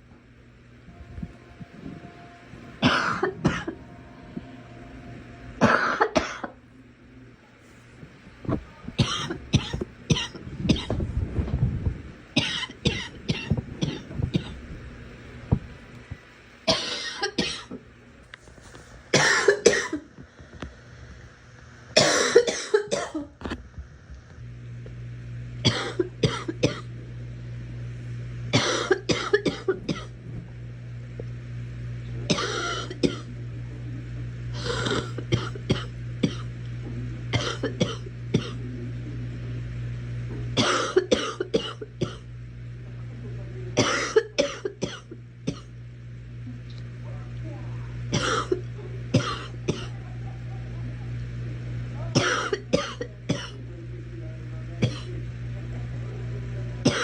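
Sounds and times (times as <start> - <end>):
girl coughing: 2.8 - 3.8, 5.6 - 6.6, 9.0 - 11.0, 12.4 - 14.6, 16.7 - 17.8, 19.1 - 20.0, 22.0 - 23.3, 25.7 - 26.9, 28.6 - 30.1, 32.3 - 33.3, 34.6 - 36.5, 37.3 - 38.6, 40.6 - 42.2, 43.8 - 45.7, 48.1 - 50.0, 52.2 - 53.6, 54.8 - 55.1.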